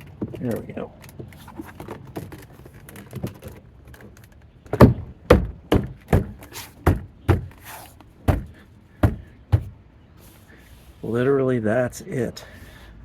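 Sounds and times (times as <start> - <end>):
hand knocking car door panel: 4.8 - 7.6, 8.3 - 9.8.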